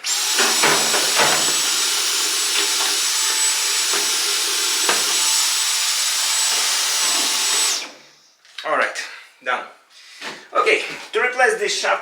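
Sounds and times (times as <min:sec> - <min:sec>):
vacuum cleaner whining: 0:00.0 - 0:08.0.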